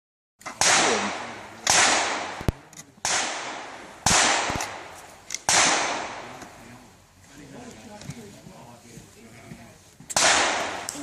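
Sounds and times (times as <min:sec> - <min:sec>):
pistol shots echoing: 0:00.5 - 0:06.4, 0:10.2 - 0:11.0.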